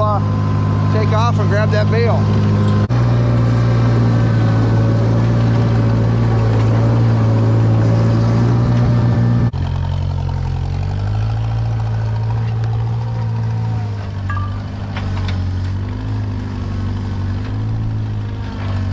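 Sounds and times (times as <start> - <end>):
skid steer engine running: 0.0 - 18.9.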